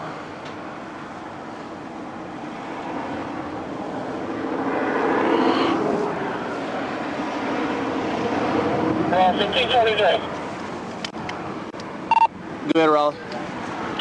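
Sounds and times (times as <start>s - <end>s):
vehicle passing by: 1.5s - 11.7s.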